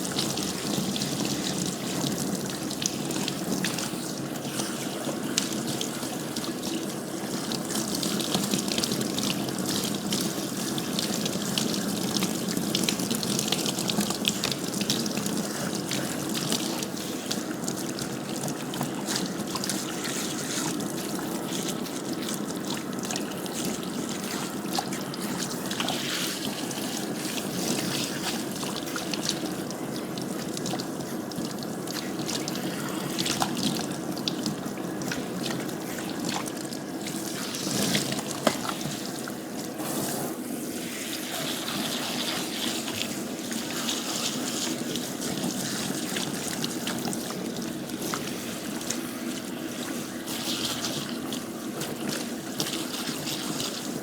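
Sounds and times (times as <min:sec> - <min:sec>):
tap water splashing into basin: 0:10.9 - 0:40.2.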